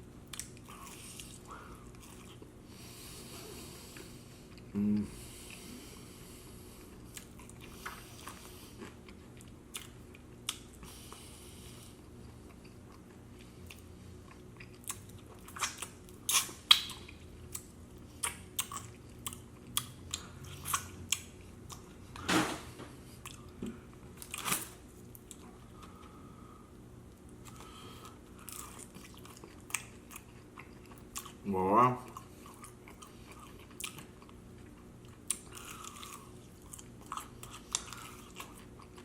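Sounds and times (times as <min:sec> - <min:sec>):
wet chewing and smacking: 0:00.2 - 0:02.5, 0:06.8 - 0:11.2, 0:12.2 - 0:22.2, 0:27.1 - 0:31.4, 0:32.0 - 0:39.0.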